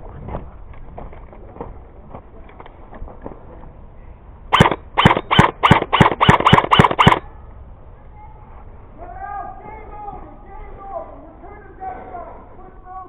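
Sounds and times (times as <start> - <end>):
airsoft gun shots: 4.5 - 7.2.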